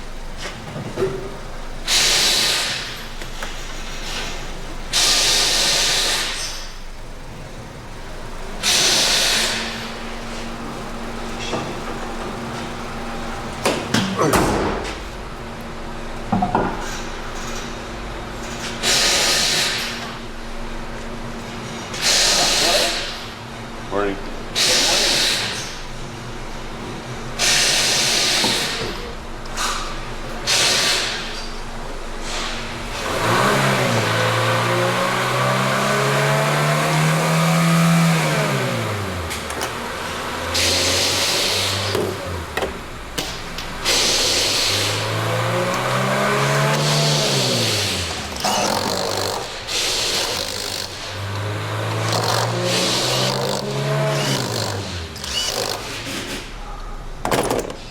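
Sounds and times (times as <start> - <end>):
car engine revving: 32.7 - 56.0.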